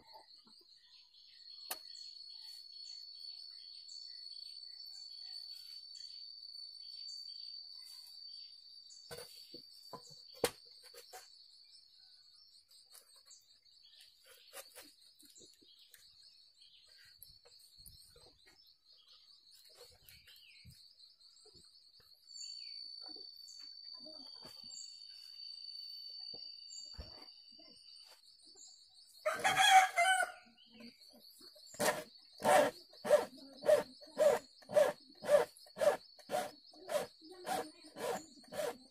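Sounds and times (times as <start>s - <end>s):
rooster crowing: 29.2s - 30.5s.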